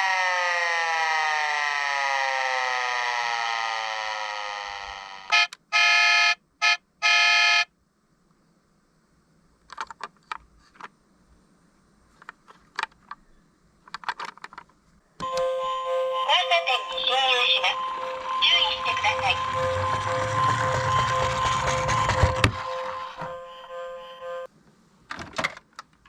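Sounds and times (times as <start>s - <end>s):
electronic siren winding down: 0.0s - 5.5s, 15.2s - 24.5s
buzzy horn-like beeps: 5.3s - 7.7s, 15.2s - 24.5s.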